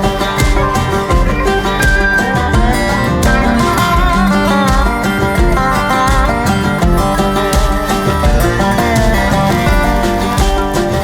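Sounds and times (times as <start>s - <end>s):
upbeat acoustic guitar music: 0.0s - 11.0s.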